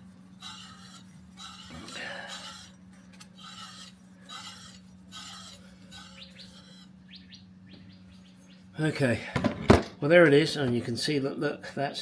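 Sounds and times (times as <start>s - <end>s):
rasping strokes on metal: 0.0s - 6.9s
steady low hum: 0.0s - 12.0s
bird chirps: 6.0s - 8.7s.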